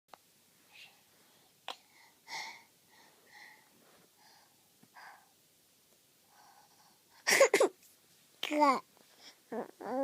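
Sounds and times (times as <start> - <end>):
baby breathing softly: 0.7 - 5.4, 6.2 - 7.2, 9.1 - 9.5.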